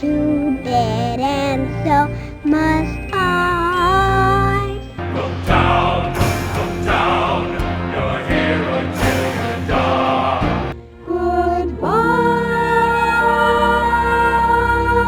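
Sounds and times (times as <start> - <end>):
orchestral accompaniment: 0.0 - 15.0
voices singing held chord: 0.0 - 15.0.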